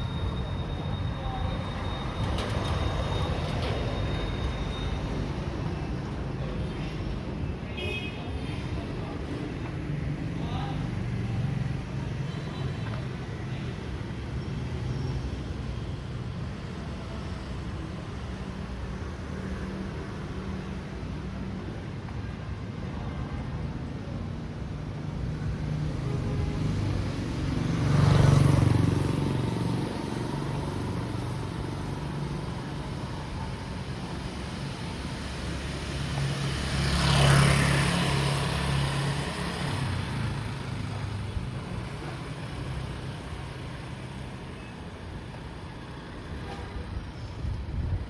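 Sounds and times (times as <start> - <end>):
street traffic: 0.0 - 48.0
motor vehicles passing: 25.3 - 48.0.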